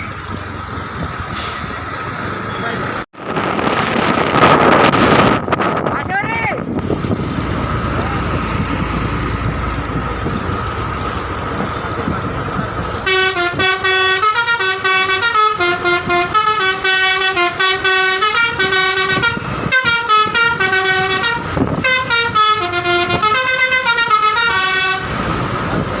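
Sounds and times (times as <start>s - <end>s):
bus running noise: 0.0s - 26.0s
multi-tone air horn melody: 13.0s - 25.1s.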